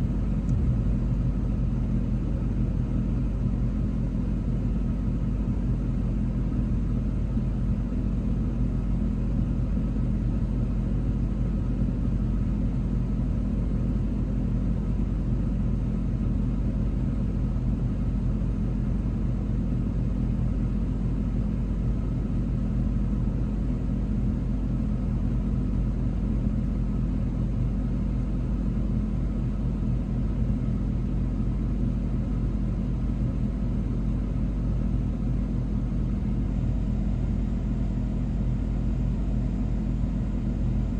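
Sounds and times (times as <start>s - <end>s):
train engine hum: 0.0s - 5.9s, 20.1s - 40.9s
train rumbling: 0.5s - 1.2s.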